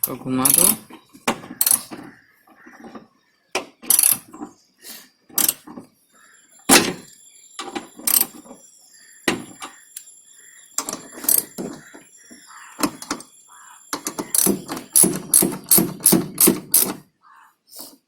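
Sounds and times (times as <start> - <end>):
sharp clicks and knocks: 0.0 - 4.6, 5.3 - 5.9, 6.7 - 8.6, 9.2 - 10.1, 10.8 - 13.3, 13.9 - 17.0.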